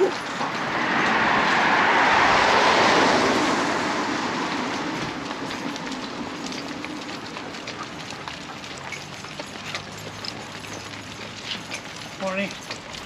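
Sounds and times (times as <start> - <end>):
vehicle passing by: 0.0 - 8.7.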